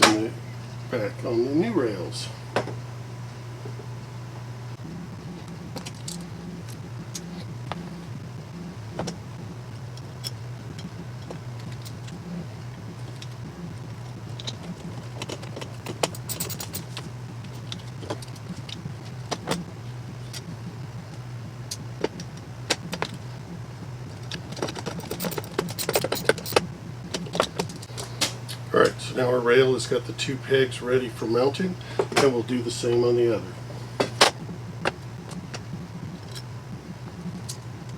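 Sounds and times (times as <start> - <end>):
steady low hum: 0.0 - 37.9
metal hardware clicks and rattles: 14.3 - 17.0, 24.2 - 28.3.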